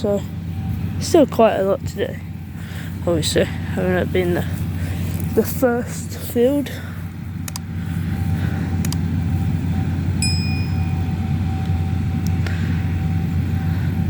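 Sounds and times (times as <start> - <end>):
combine harvester running: 0.0 - 14.0
short high ding: 10.2 - 11.1.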